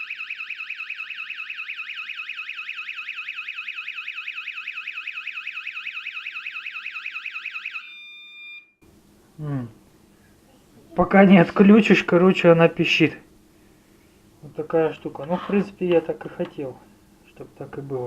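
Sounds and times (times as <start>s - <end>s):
door alarm siren warbling: 0.0s - 8.8s.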